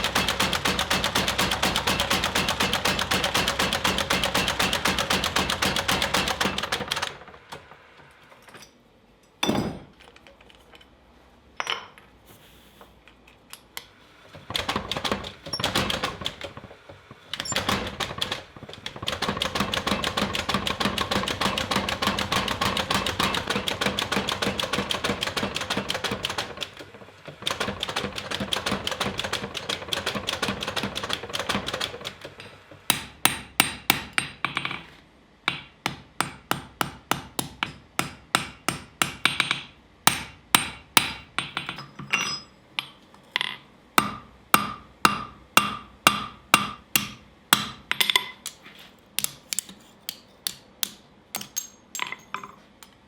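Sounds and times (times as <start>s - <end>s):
hammer on anvil: 35.5s - 43.0s, 44.0s - 48.5s.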